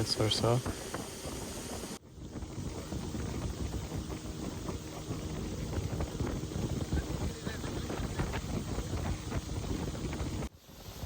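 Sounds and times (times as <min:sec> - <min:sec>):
motorboat engine: 0:00.0 - 0:11.0
water noise: 0:00.0 - 0:11.0
wind buffeting microphone: 0:00.0 - 0:11.0.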